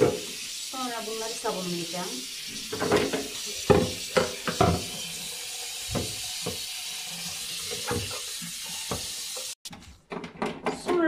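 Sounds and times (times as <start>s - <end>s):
tap water running into sink: 0.0s - 9.6s
plastic parts knocking: 9.7s - 11.0s.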